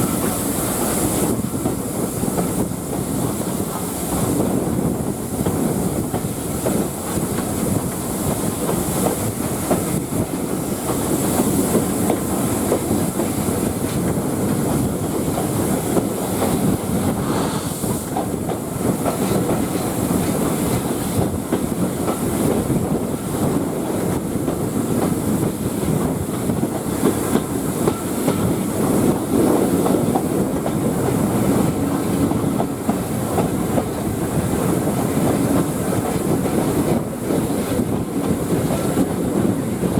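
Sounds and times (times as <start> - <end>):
train rumbling along track: 0.0 - 39.9
high hiss: 15.8 - 19.4.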